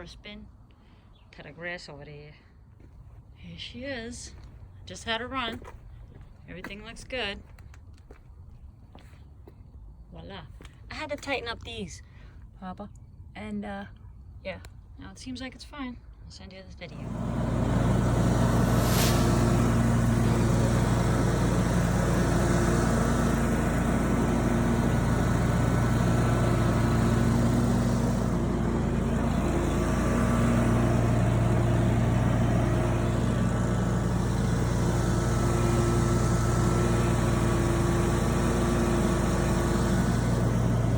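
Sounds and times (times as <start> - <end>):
lawn mower engine running: 16.9 - 40.9.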